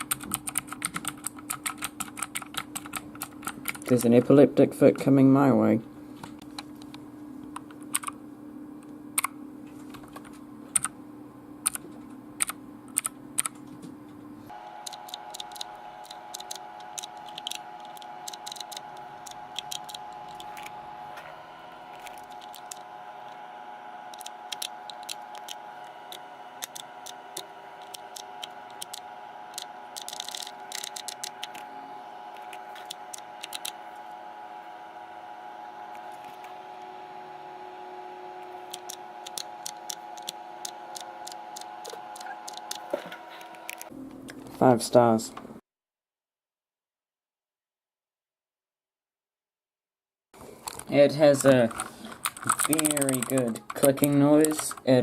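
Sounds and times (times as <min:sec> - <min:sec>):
mechanical keyboard keys clicking: 0:00.0 - 0:04.0, 0:07.6 - 0:08.2, 0:10.1 - 0:10.9, 0:11.6 - 0:11.8, 0:12.4 - 0:13.6, 0:14.8 - 0:20.7, 0:22.0 - 0:22.8, 0:24.1 - 0:31.7, 0:32.4 - 0:33.8, 0:38.6 - 0:42.9, 0:50.7 - 0:54.9
steady low hum: 0:00.0 - 0:45.6.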